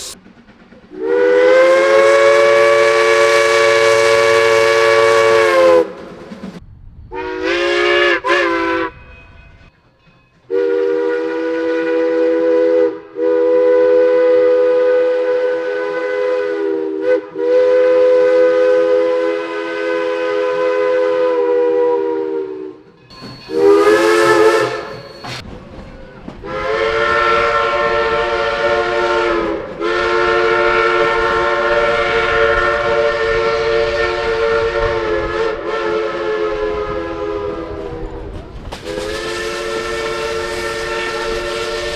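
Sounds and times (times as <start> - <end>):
steam locomotive chime whistle: 0.0 - 0.2, 0.9 - 6.0, 7.1 - 41.9
steam hissing: 0.0 - 6.6, 22.5 - 41.9.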